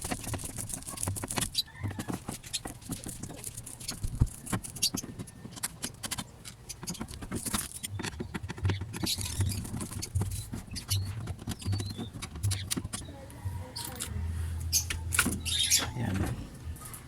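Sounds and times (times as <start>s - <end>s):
metal and plastic parts rattling: 0.0s - 13.1s
low hum: 13.3s - 17.0s.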